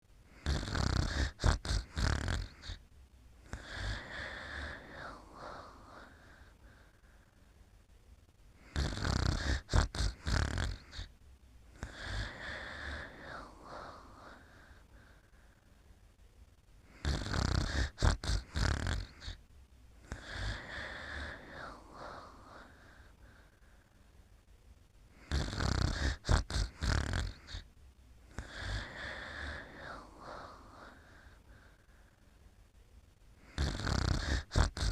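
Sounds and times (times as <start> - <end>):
person snoring: 0.3 - 2.8, 3.4 - 7.0, 8.6 - 11.1, 11.7 - 15.3, 16.8 - 19.4, 20.0 - 23.6, 25.1 - 27.7, 28.3 - 31.8, 33.4 - 34.9.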